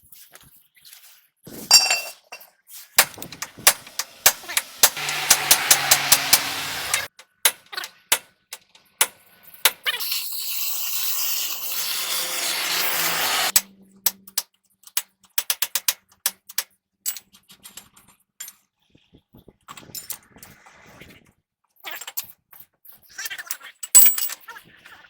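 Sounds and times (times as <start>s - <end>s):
hand tools clinking on metal: 1.7s - 7.1s, 23.8s - 24.4s
steady hiss: 3.0s - 7.1s.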